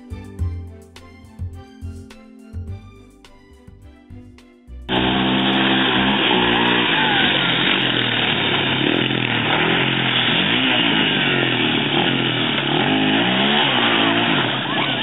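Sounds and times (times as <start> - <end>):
engine revving: 4.9 - 15.0.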